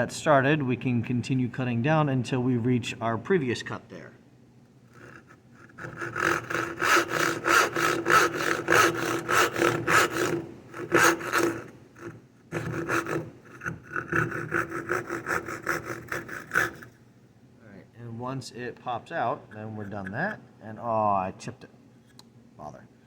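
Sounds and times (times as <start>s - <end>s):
back saw cutting wood: 4.9s - 17.0s, 19.5s - 20.4s.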